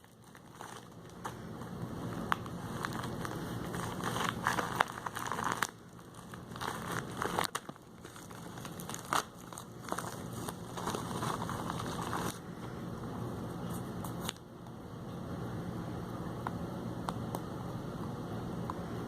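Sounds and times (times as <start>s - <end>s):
plastic packaging crinkling: 0.0s - 12.4s.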